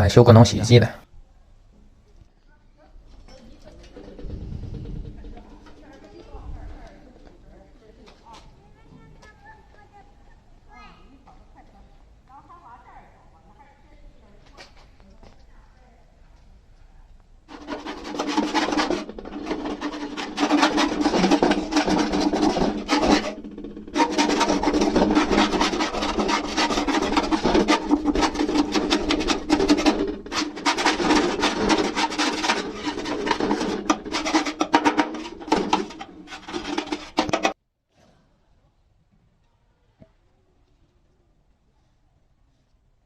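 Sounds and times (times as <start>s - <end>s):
file scraping a hard surface: 17.5s - 37.6s.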